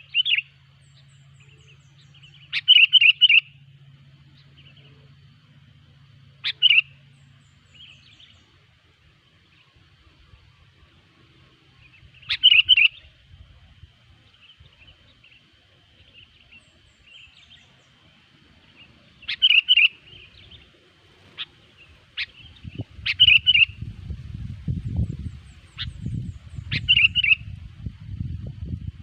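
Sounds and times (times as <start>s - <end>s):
low rumble: 22.4s - 29.0s.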